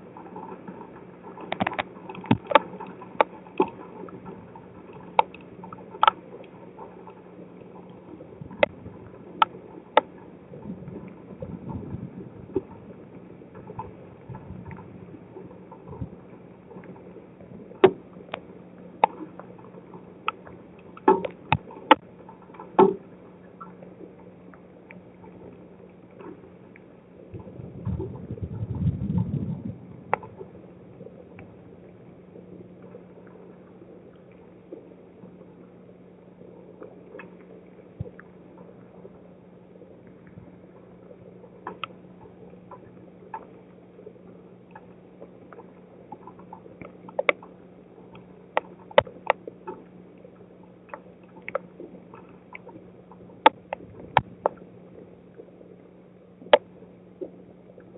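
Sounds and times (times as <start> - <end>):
low rumble: 8.0 - 18.9, 26.6 - 43.3.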